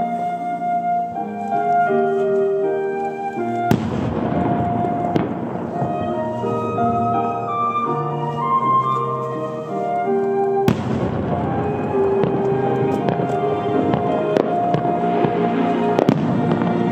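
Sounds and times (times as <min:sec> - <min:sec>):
wind instrument music: 0:00.0 - 0:16.9
firework crack: 0:03.4 - 0:07.6, 0:10.2 - 0:16.9
firework bang with rumbling echo: 0:03.7 - 0:06.2, 0:10.7 - 0:15.4, 0:16.0 - 0:16.9.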